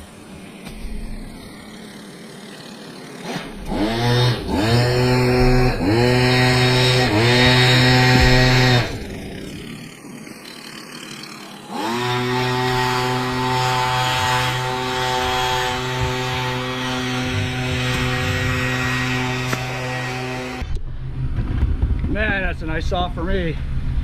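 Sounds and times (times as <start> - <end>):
chainsaw revving: 0.9 - 20.8.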